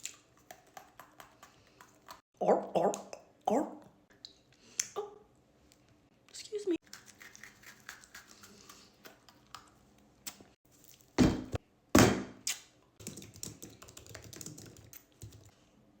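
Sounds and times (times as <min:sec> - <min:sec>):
loud thumps: 0:11.2 - 0:12.4.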